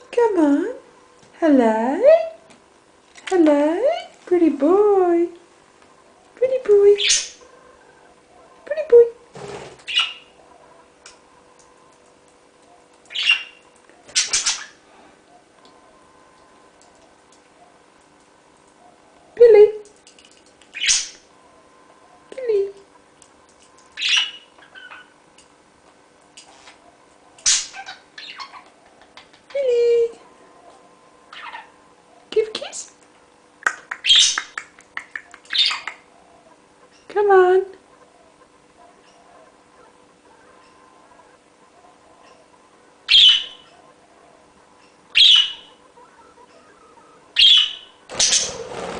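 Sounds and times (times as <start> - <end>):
budgerigar chirps and squawks: 9.9 - 10.4, 13.1 - 13.6, 14.2 - 14.8, 27.4 - 28.7, 31.3 - 31.8, 35.5 - 36.1, 43.1 - 43.9, 45.2 - 48.6.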